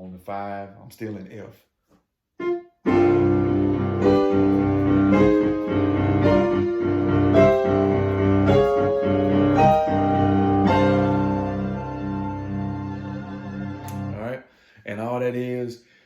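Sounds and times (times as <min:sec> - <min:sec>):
keyboard playing piano chords: 0:02.4 - 0:14.3.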